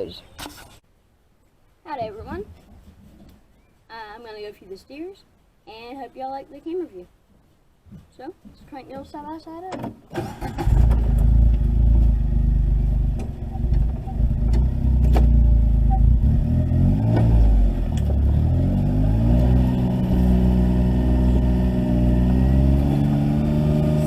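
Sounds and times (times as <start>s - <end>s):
utility vehicle engine revving: 10.2s - 24.0s.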